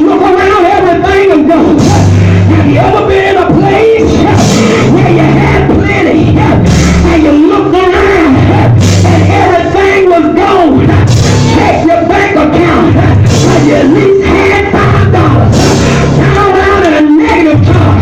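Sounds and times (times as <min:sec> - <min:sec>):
live church music: 0:00.0 - 0:18.0
voices singing along: 0:00.0 - 0:18.0.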